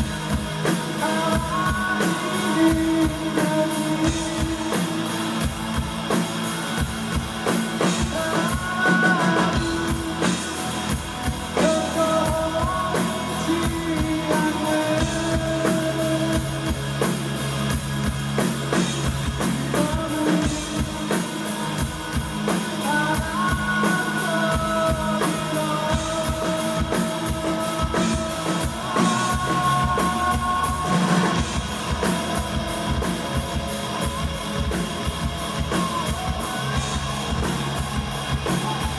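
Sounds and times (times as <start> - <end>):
sliding sung or lead notes: 0.0 - 17.8, 18.6 - 38.9
drum kit beating: 0.0 - 38.9
electric guitar: 0.0 - 38.9.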